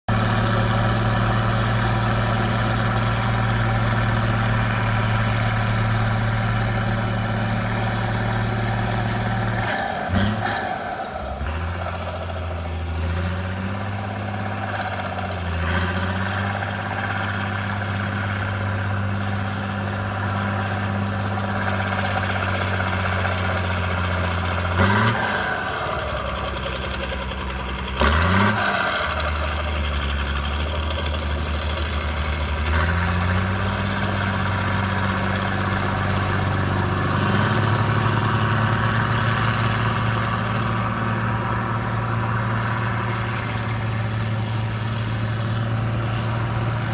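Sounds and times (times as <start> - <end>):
heavy engine running: 0.0 - 46.9.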